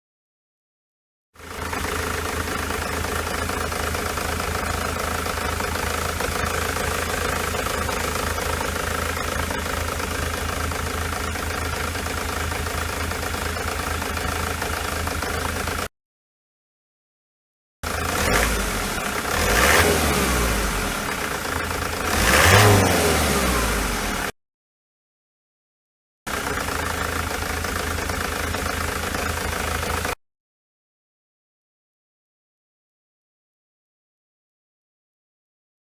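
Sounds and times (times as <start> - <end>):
diesel engine idling with misfire: 1.4 - 15.9, 17.8 - 24.3, 26.3 - 30.2.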